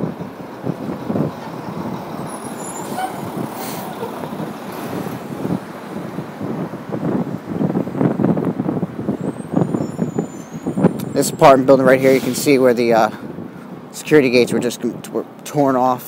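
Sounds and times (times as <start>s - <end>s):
heavy vehicle running: 0.0s - 16.0s
short hiss: 12.0s - 12.6s.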